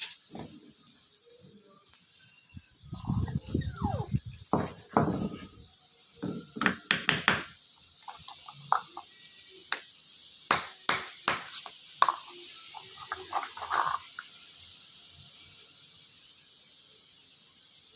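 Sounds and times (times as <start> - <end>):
hard objects tapping and knocking: 4.6 - 5.6, 6.2 - 7.5, 10.5 - 12.2.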